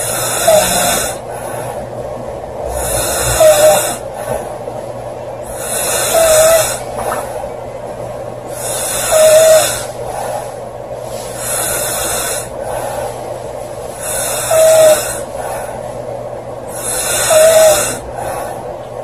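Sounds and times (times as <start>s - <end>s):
woman snoring loudly: 0.0s - 1.2s, 2.7s - 4.0s, 5.5s - 6.8s, 8.6s - 9.9s, 11.4s - 12.5s, 14.0s - 15.3s, 16.7s - 18.0s
quiet breathing: 0.0s - 4.8s, 8.5s - 19.0s.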